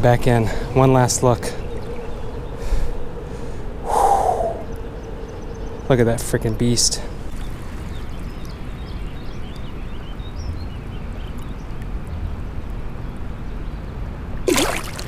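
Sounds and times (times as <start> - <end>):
wind rumbling on microphone: 0.0 - 15.0
flowing river rushing: 14.5 - 15.0.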